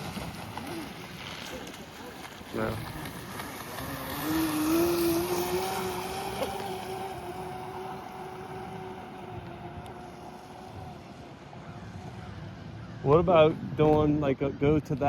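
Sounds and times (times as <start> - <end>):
electric boat motor whining: 0.0 - 13.0
wind noise on microphone: 4.0 - 15.0.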